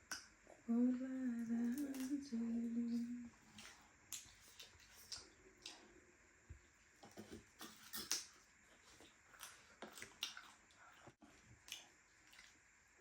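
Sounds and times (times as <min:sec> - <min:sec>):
person chewing food: 0:03.3 - 0:06.0, 0:07.0 - 0:12.6.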